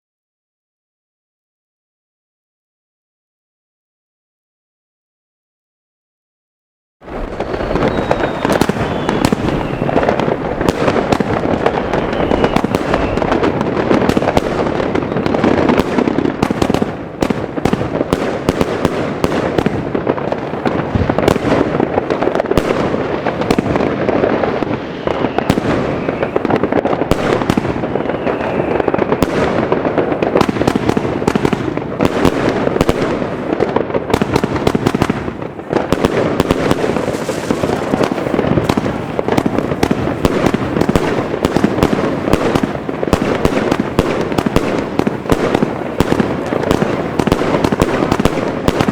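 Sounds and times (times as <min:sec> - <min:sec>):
fireworks launching and cracking: 0:07.0 - 0:48.9
faint rising firework whistles: 0:07.1 - 0:16.4, 0:22.5 - 0:30.8, 0:36.4 - 0:41.7.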